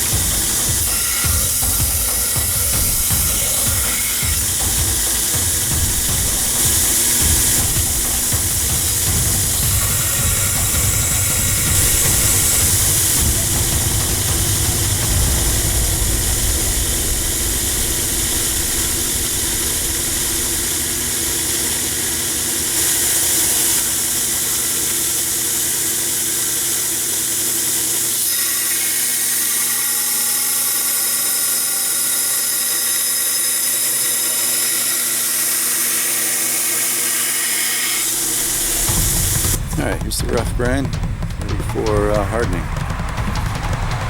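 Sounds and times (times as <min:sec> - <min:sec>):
motor hum: 0:00.0 - 0:27.9, 0:38.0 - 0:41.5
belt grinder grinding steel: 0:00.0 - 0:44.0.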